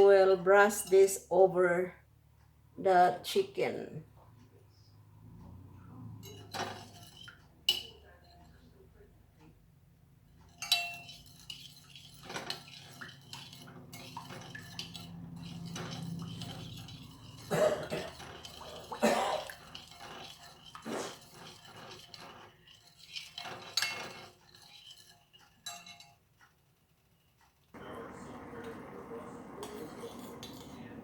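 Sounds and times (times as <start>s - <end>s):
saucepan and utensils clinking: 6.2s - 8.4s, 10.4s - 26.2s, 27.8s - 31.0s.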